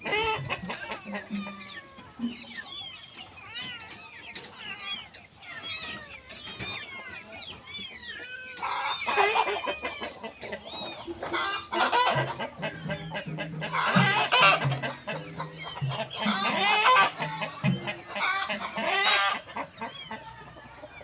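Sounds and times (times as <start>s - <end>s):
short clucking calls: 0.0s - 3.3s, 9.1s - 20.4s.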